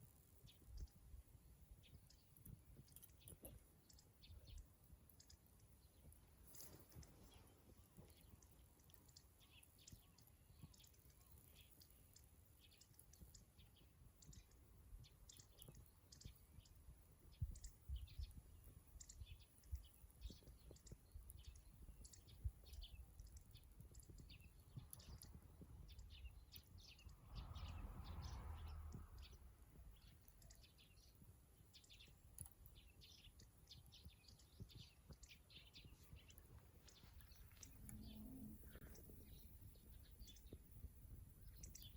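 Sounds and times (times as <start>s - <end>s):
small birds chirping: 0.0s - 41.9s
small wood fire crackling: 0.0s - 41.9s
soft rushing noise: 26.8s - 30.1s.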